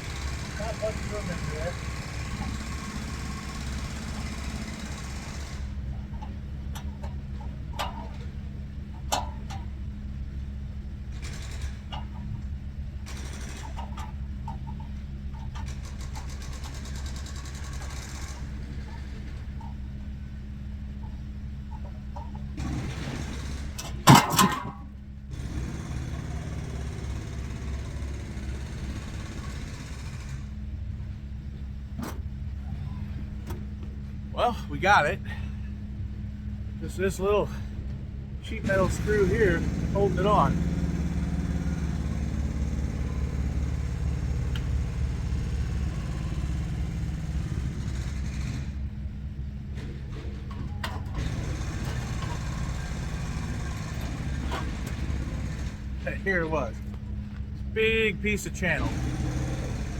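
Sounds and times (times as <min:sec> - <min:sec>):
diesel truck engine idling: 0:00.0 - 0:24.1, 0:24.8 - 0:59.9
loud metal clanks: 0:22.6 - 0:24.8.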